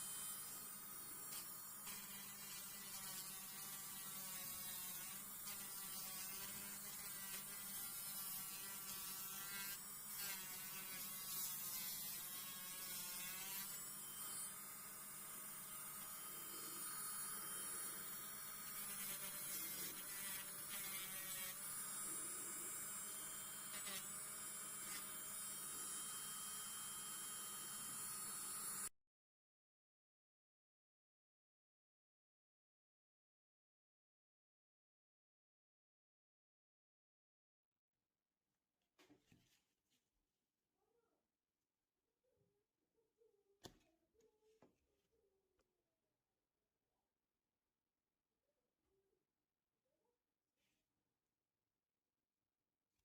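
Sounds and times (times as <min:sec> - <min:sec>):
nail drill motor whining hum: 0:00.0 - 0:28.9.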